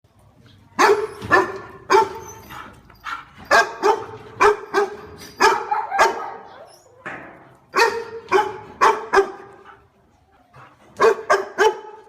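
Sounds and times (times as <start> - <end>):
dog barking: 0.8 - 2.2, 3.1 - 6.5, 7.8 - 9.6, 11.0 - 12.0.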